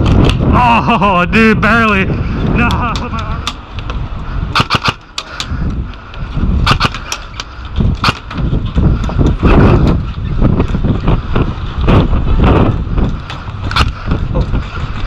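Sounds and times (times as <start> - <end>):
wind rumbling on microphone: 0.0 - 15.0
airsoft gun shots: 4.6 - 5.0, 6.6 - 7.1, 8.0 - 8.3.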